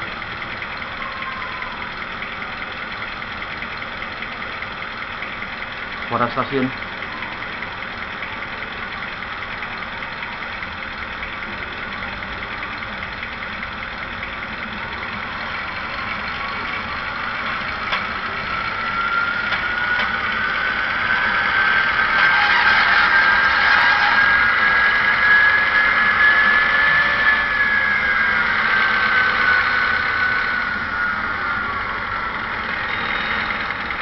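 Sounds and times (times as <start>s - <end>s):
diesel engine through small speaker: 0.0s - 34.0s
rising whine: 14.0s - 34.0s.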